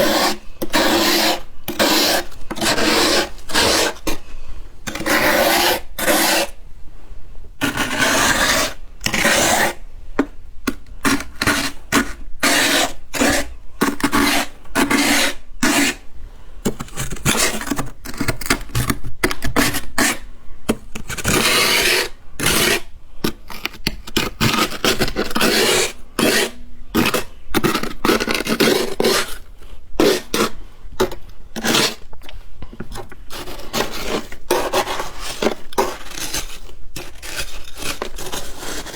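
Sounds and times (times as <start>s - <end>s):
frost being scraped: 0.0s - 4.3s, 4.9s - 6.6s, 11.0s - 16.0s, 24.2s - 30.6s, 33.3s - 38.9s.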